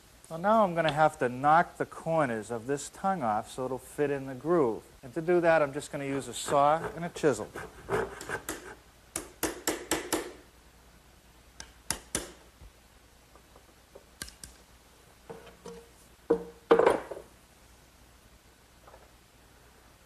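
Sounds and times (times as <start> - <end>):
hand saw sawing wood: 6.4 - 8.8
chisel strikes: 8.0 - 10.4, 11.6 - 12.4.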